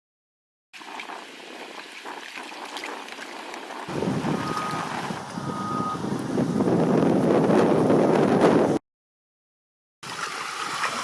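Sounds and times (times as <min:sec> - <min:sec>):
wind buffeting microphone: 0:01.3 - 0:08.8
short beeps: 0:04.4 - 0:06.0.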